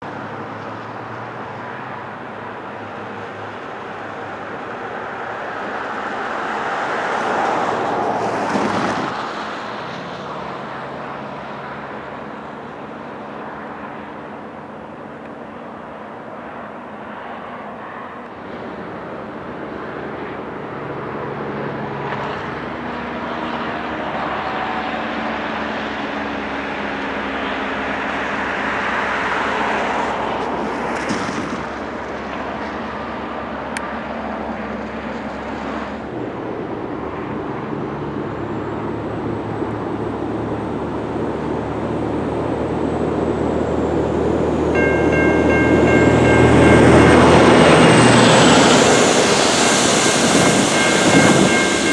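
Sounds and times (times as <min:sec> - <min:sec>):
vehicles passing on highway: 0:00.0 - 0:51.9
low engine drone: 0:32.0 - 0:51.9.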